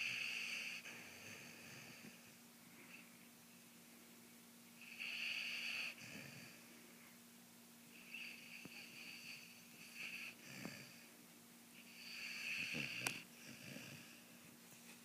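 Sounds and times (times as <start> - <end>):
wheezy snoring: 0.0 - 2.3, 4.8 - 6.6, 8.0 - 11.1, 11.8 - 14.2
faint steady hum: 0.0 - 15.0.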